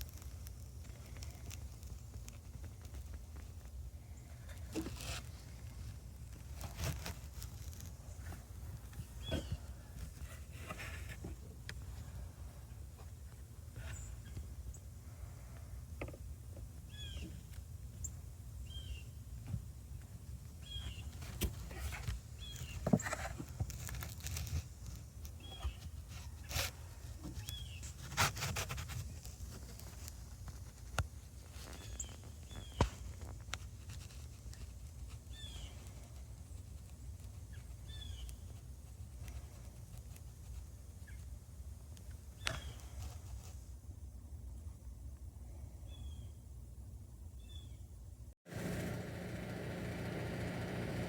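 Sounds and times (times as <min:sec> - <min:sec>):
ice pellets ticking on leaves: 0:00.0 - 0:03.1
low steady rumble: 0:48.5 - 0:51.0.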